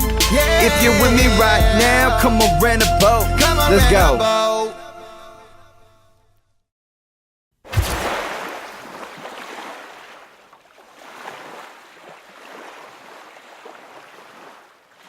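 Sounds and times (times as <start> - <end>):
water washing like waves: 7.7 - 15.0.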